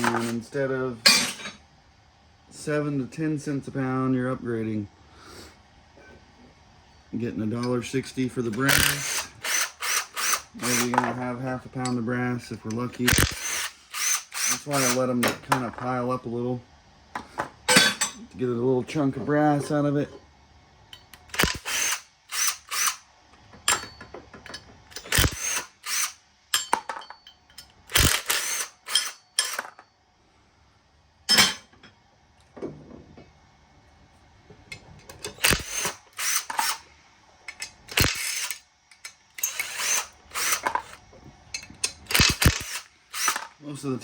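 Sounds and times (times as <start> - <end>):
ratchet wrench clicking: 8.6 - 11.0, 13.1 - 15.0, 21.0 - 23.0, 25.0 - 26.7, 27.5 - 29.8, 35.2 - 36.8, 37.5 - 41.0, 41.6 - 43.5.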